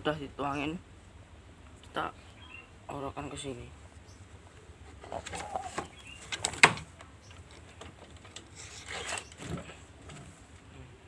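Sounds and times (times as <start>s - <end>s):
handling and scuffling noises: 4.4s - 10.7s
chicken sounds: 4.6s - 6.3s.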